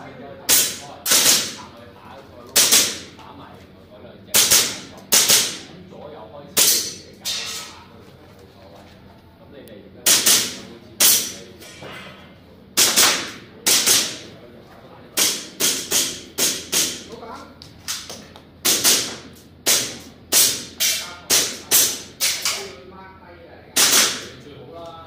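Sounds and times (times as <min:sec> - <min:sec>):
airsoft pistol shots: 0:00.5 - 0:01.6, 0:02.6 - 0:03.1, 0:04.4 - 0:05.6, 0:10.0 - 0:11.4, 0:12.8 - 0:14.2, 0:15.2 - 0:17.1, 0:18.6 - 0:22.6, 0:23.8 - 0:24.4.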